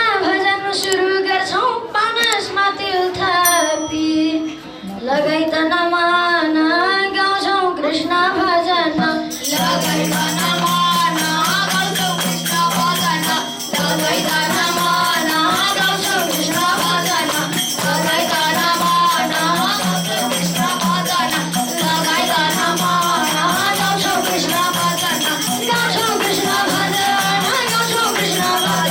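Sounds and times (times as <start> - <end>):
jingling percussion: 3.4 - 4.8, 9.2 - 28.9
boys singing together: 7.4 - 28.9.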